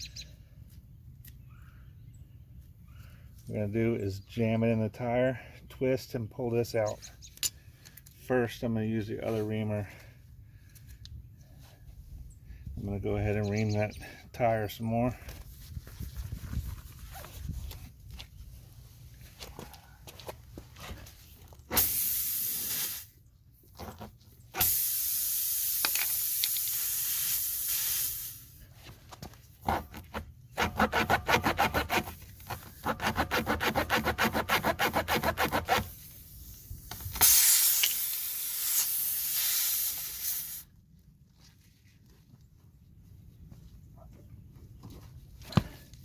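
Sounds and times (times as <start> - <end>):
reamer rasping in tyre hole: 21.7 - 23.1, 29.6 - 36.3
air hissing from tyre: 21.7 - 23.2, 24.6 - 28.6, 35.9 - 40.7.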